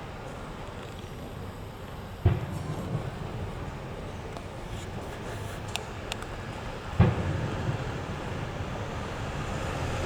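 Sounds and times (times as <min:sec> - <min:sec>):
low rumble of fireworks: 0:00.0 - 0:10.0
faint sharp crackles: 0:00.2 - 0:08.3
loud firework boom: 0:02.2 - 0:03.7, 0:07.0 - 0:08.5.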